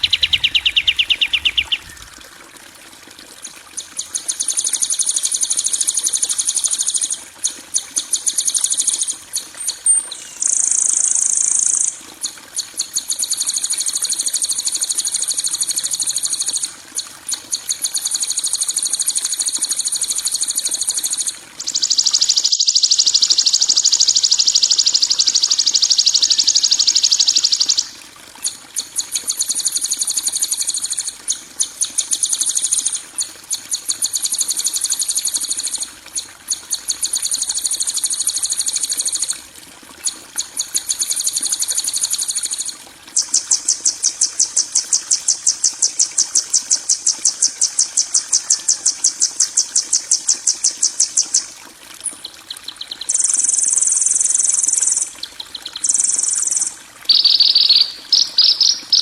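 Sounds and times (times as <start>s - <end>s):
high-pitched bird trills: 0.0s - 2.1s, 9.6s - 11.9s, 21.2s - 27.9s, 55.8s - 59.0s.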